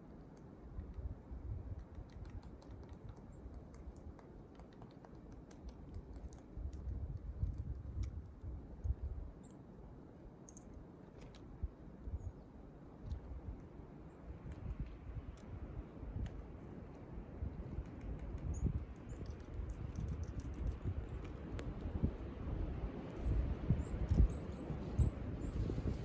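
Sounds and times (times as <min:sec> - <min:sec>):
light clicks and taps: 0:01.7 - 0:09.6.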